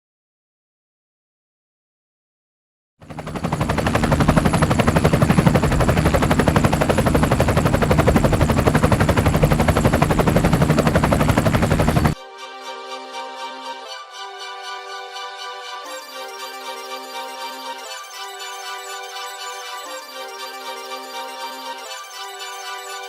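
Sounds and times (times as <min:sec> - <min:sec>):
low hum: 0:03.1 - 0:12.2
music: 0:03.1 - 0:23.0.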